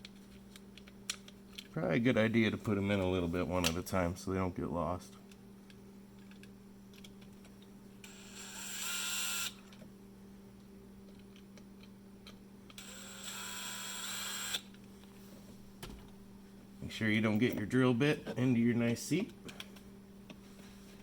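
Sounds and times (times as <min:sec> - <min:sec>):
faint steady hum: 0:00.0 - 0:21.0
cordless drill driving screws: 0:12.8 - 0:14.6.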